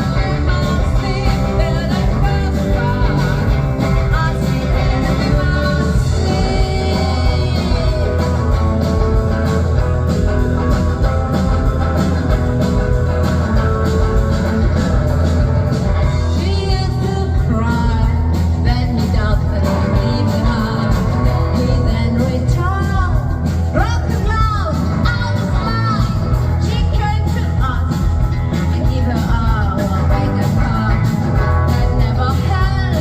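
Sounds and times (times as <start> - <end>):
person singing: 0.0 - 9.1, 15.8 - 33.0
rock band playing live: 0.0 - 33.0
steady drum beat: 0.0 - 33.0.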